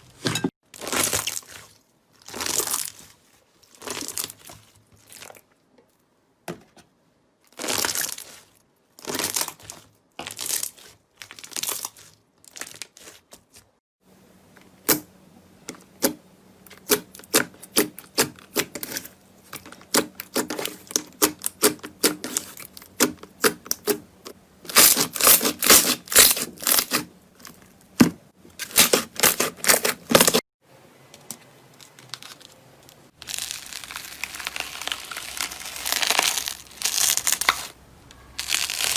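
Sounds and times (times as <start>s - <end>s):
crunchy slime crackling: 0.7s - 5.5s, 7.5s - 13.6s, 31.8s - 38.9s.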